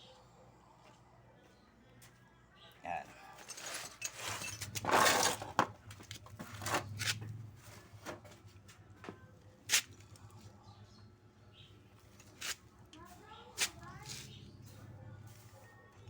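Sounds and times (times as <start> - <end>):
tools clanking on engine: 3.4 - 8.4.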